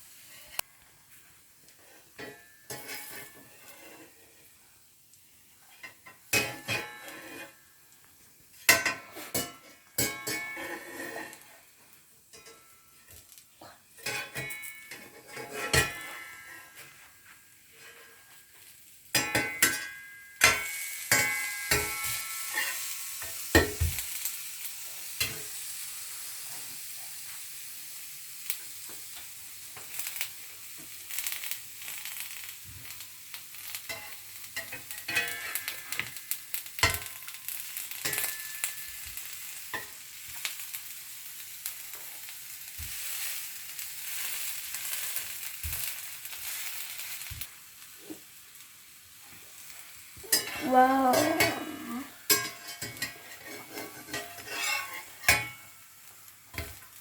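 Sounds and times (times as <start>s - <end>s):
dosa sizzling in a pan: 0.0s - 57.0s
metal spatula scraping and clinking: 1.8s - 4.5s, 5.7s - 7.7s, 8.6s - 11.7s, 12.3s - 13.3s, 14.0s - 23.9s, 33.9s - 40.0s, 50.3s - 55.8s, 56.5s - 57.0s.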